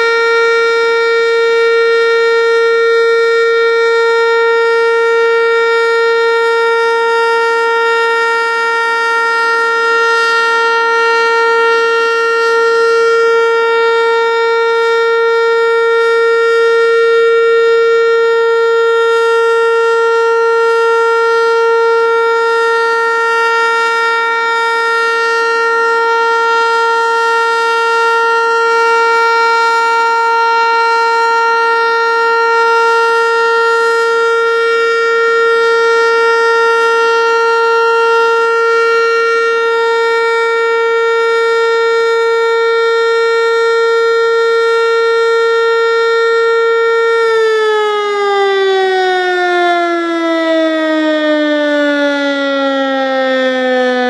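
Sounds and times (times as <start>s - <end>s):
warning siren winding down: 0.0s - 54.0s.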